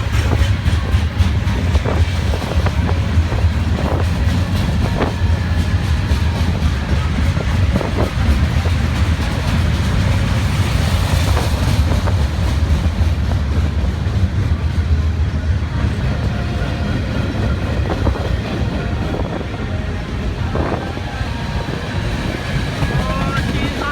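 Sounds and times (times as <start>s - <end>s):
train wheel clicks: 0.0s - 14.9s
freight train wheels rumbling: 0.0s - 23.9s.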